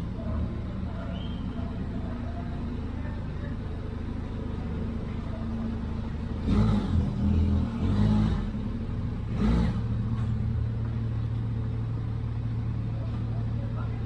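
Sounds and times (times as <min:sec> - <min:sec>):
vehicle engine running and revving: 0:04.3 - 0:14.0.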